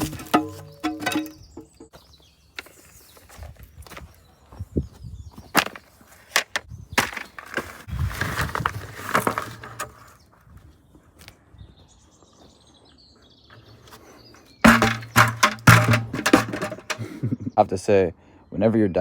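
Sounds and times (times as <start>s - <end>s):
digging tool striking stony dirt: 0.0s - 1.9s, 14.7s - 17.1s
scrape of loose soil: 7.4s - 10.2s.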